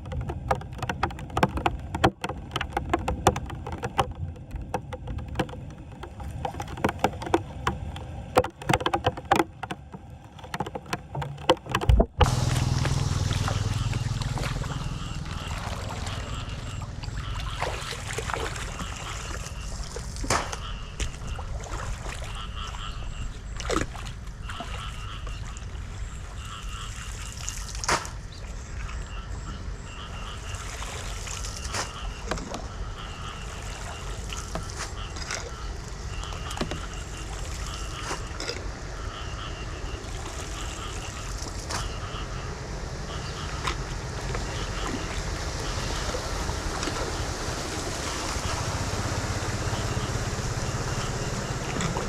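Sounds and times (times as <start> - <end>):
sharp knocks: 0.0 - 17.6
floodwater trickling and splashing: 0.0 - 52.0
steady low rumble: 11.9 - 19.7.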